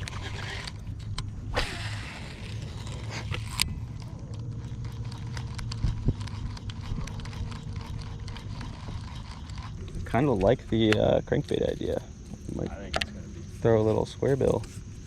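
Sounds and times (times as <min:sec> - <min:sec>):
fishing line rushing off reel: 0:00.0 - 0:09.8
fishing reel cranked whirring: 0:00.0 - 0:11.2.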